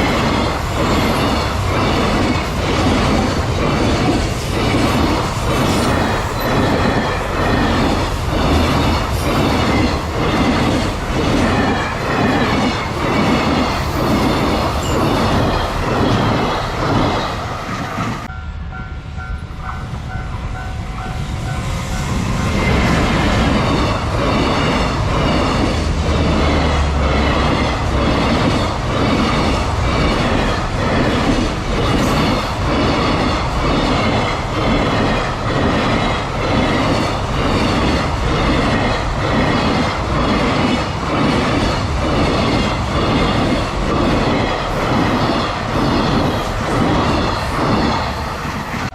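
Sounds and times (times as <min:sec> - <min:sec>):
train wheels clattering over rail joints: 0:00.0 - 0:18.3.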